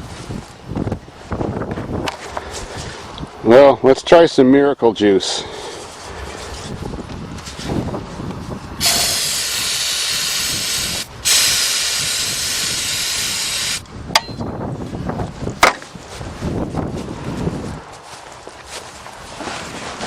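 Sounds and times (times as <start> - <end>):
aerosol can hissing spray: 8.8 - 13.8.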